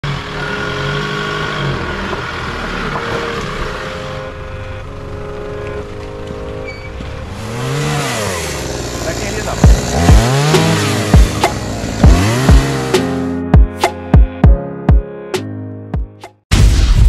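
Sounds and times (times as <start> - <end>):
tyre and road noise: 0.0 - 13.2
vehicle engine running: 0.0 - 13.3.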